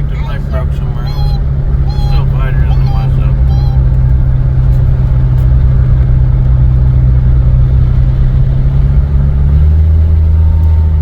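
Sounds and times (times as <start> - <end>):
car engine and exhaust droning: 0.0 - 11.0.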